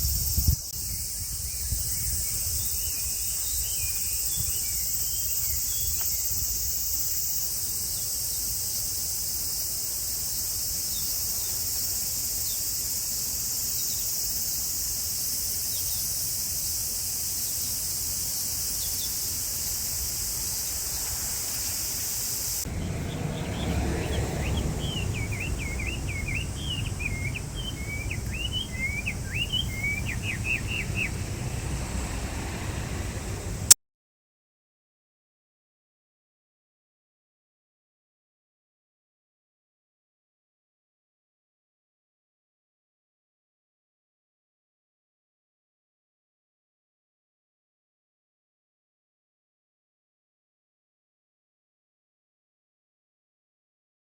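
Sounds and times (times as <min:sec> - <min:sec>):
faint bird chirps: 0:00.0 - 0:14.7, 0:18.5 - 0:31.2
high-pitched insect chorus: 0:00.0 - 0:33.8
songbird singing: 0:00.0 - 0:33.8
low rumble: 0:22.6 - 0:33.8.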